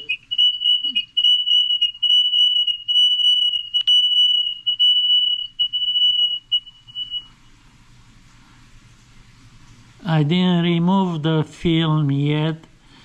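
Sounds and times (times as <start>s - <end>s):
high-pitched electronic whistle: 0.0s - 7.4s.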